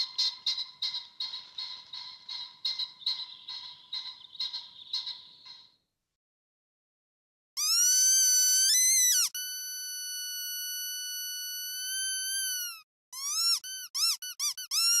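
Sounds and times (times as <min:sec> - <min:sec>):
high-pitched squeaking whistle: 0:07.6 - 0:15.0.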